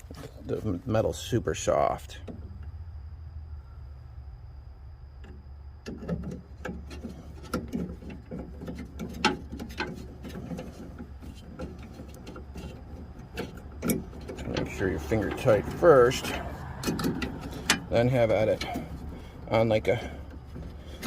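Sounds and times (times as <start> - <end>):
steady low hum: 0.0 - 21.0
metallic clicks of fasteners: 5.2 - 21.0.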